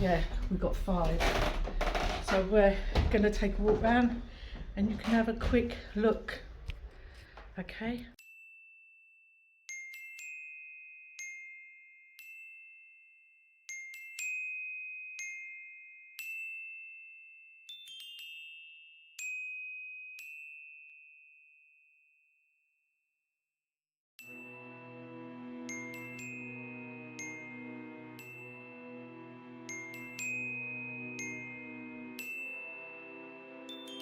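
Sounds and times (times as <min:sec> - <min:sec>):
music-box notes: 0:09.7 - 0:21.2, 0:29.7 - 0:34.0.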